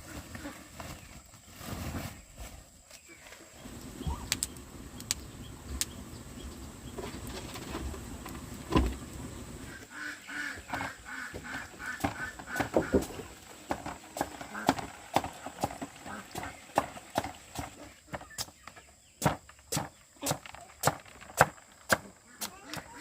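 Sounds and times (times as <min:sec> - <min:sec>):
bird calling: 0:03.0 - 0:07.2, 0:09.3 - 0:19.2.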